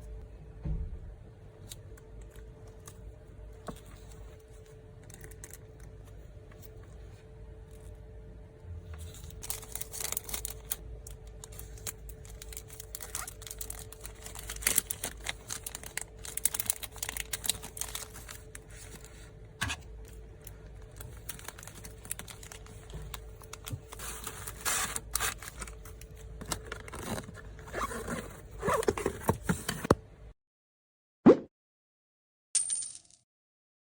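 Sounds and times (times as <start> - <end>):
plastic packaging crinkling: 9.4 - 19.3, 20.0 - 29.7.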